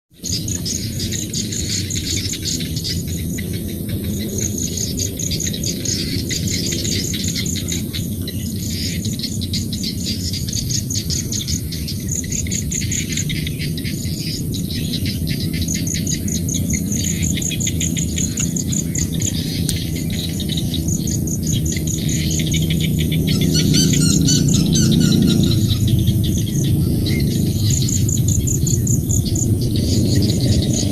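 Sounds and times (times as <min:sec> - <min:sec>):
birds chirping: 0:00.2 - 0:30.9
insects trilling: 0:00.2 - 0:30.9
steady low drone: 0:00.2 - 0:30.9.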